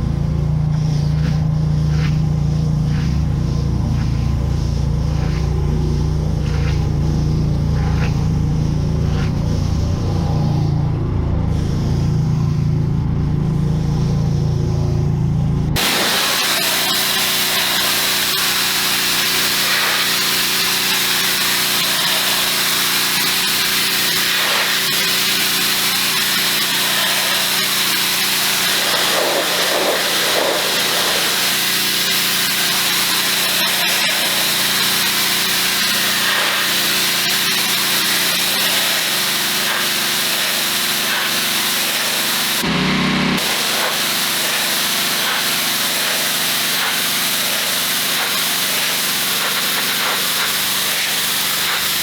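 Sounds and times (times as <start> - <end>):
pressure washer motor humming: 0.0 - 52.0
water jet hissing: 15.8 - 42.7, 43.4 - 52.0.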